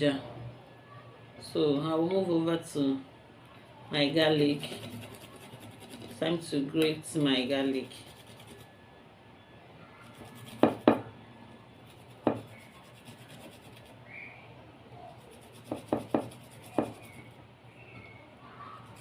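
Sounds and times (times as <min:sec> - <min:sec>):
garlic rubbing on grater: 0:04.5 - 0:06.2, 0:10.1 - 0:10.8, 0:11.8 - 0:14.0, 0:15.1 - 0:17.4.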